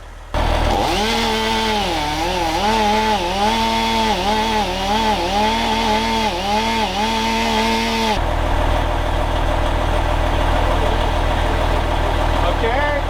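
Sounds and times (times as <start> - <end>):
chainsaw cutting wood: 0.4 - 8.6.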